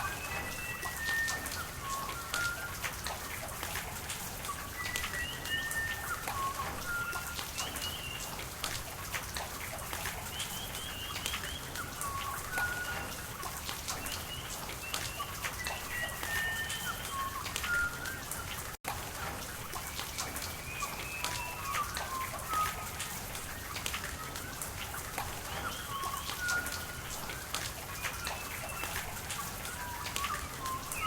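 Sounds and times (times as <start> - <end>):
rain pattering: 0.0 - 31.0
running water: 0.0 - 31.0
birds singing: 10.1 - 18.3, 25.3 - 31.0.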